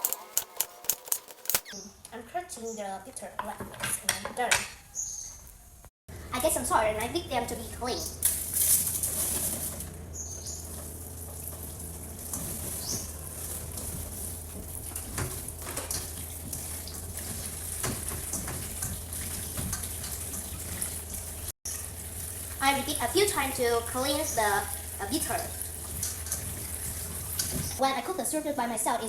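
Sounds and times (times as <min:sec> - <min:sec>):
tap water running: 0:07.5 - 0:28.3.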